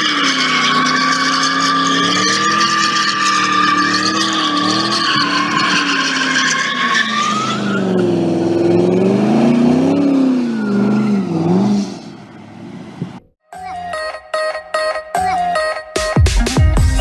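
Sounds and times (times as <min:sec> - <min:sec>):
tyres squealing: 0:00.0 - 0:08.4
car engine revving: 0:00.0 - 0:13.0.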